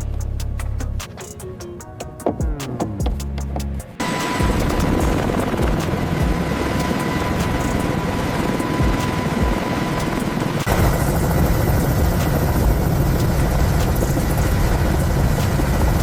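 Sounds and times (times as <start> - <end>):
helicopter rotor noise: 2.4 - 16.0
helicopter engine whine: 4.0 - 16.0.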